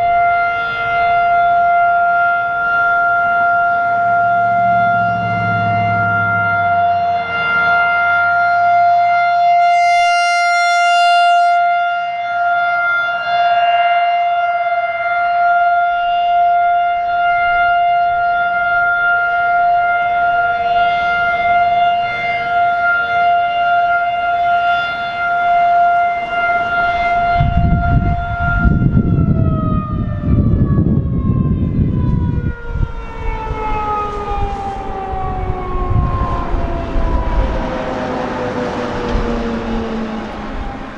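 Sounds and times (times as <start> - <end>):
siren winding down: 9.6 - 11.6, 32.4 - 40.9
warning siren steady tone: 9.6 - 11.6, 27.8 - 40.9.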